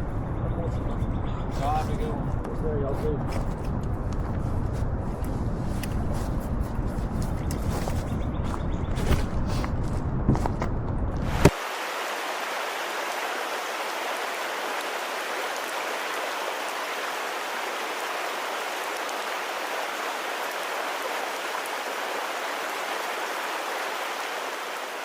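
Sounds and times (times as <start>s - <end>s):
water rushing: 11.2s - 25.0s.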